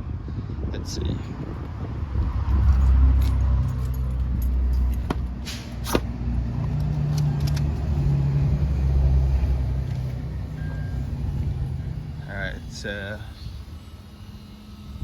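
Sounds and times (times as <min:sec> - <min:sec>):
keys jangling: 0:02.6 - 0:05.1.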